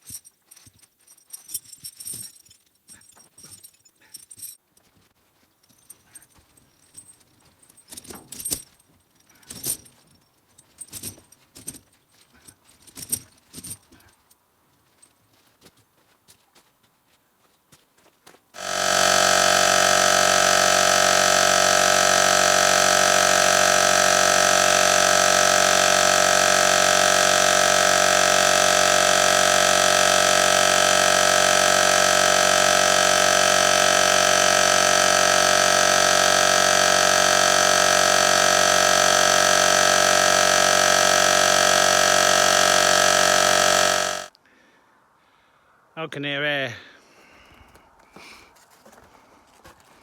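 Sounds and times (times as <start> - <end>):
air compressor running: 18.6 - 44.3.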